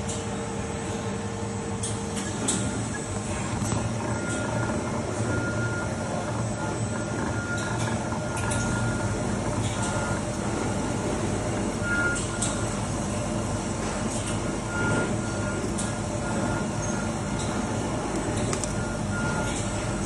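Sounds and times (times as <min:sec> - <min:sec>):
machine mechanical hum: 0:00.0 - 0:20.0.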